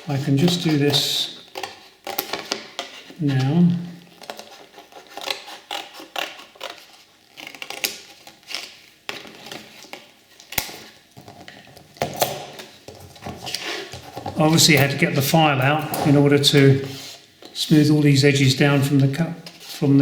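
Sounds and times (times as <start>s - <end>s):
scissors cutting cardboard: 0.0s - 15.0s.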